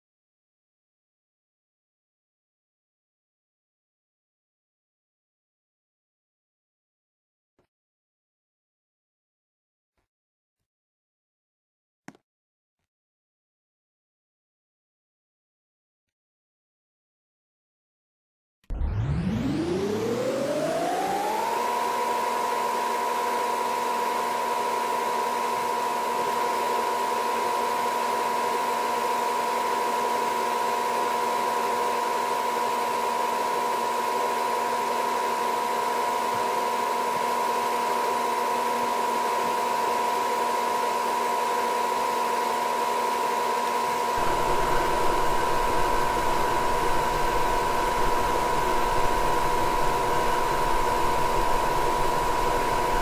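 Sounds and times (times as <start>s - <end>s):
furnace motor whining: 43.9s - 53.0s
burner low rumble: 44.2s - 53.0s.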